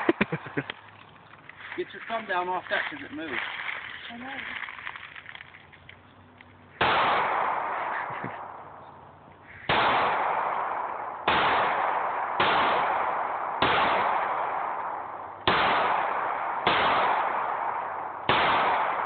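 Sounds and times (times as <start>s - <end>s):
pistol shots with echo: 6.8s - 8.9s, 9.5s - 19.0s.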